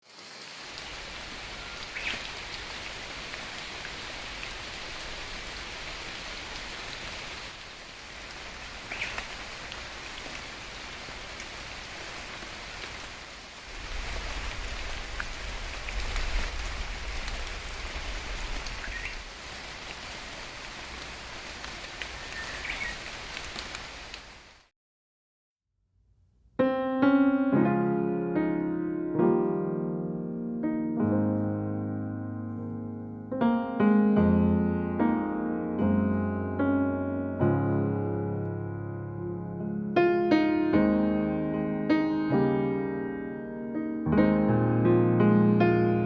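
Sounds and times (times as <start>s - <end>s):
steady rain falling: 0.0s - 24.7s.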